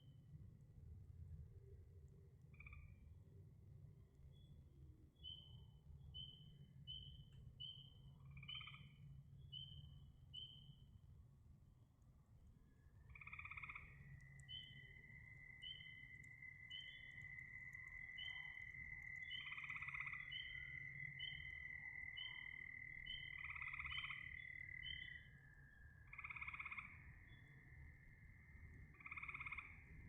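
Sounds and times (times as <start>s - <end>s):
frogs chirping: 7.6s - 9.0s, 13.1s - 30.0s
frog rattling croak: 13.1s - 25.1s, 26.1s - 27.1s, 28.9s - 29.9s.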